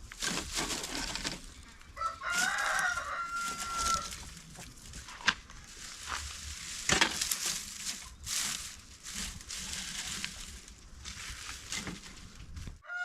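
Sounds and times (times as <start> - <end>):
rooster crowing: 1.9 - 4.3.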